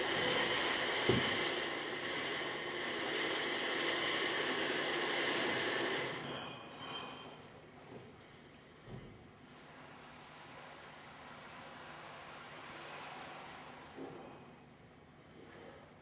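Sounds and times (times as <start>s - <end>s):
heavy rain on a plastic roof: 0.0s - 1.5s.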